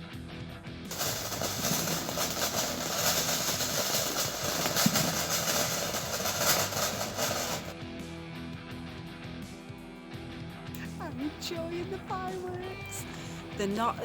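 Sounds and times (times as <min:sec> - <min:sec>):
firework fountain hissing and crackling: 0:00.9 - 0:07.8.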